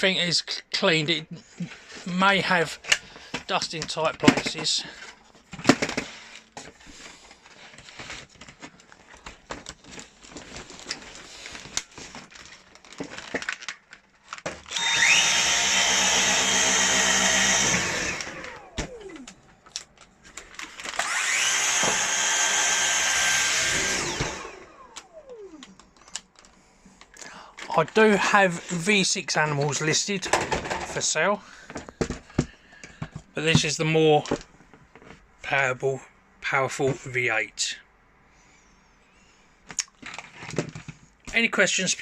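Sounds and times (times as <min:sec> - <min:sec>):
vacuum motor whine: 0:14.7 - 0:19.3, 0:20.9 - 0:25.7.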